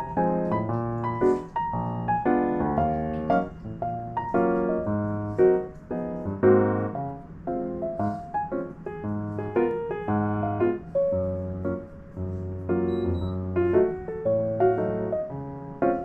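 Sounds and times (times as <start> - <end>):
piano-like keyboard notes: 0.0 - 16.0.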